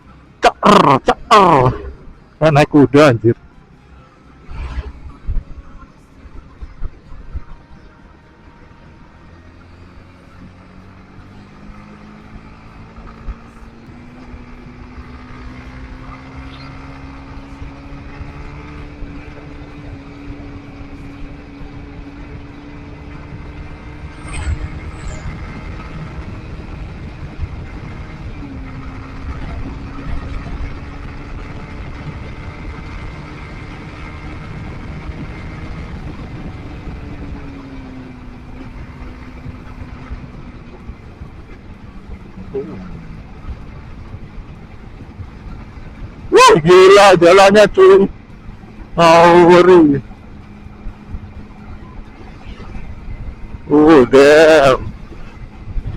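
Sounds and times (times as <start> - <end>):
wind and road noise: 0.0 - 55.9
motorcycle engine accelerating: 4.3 - 55.9
short high squeal: 24.1 - 25.5.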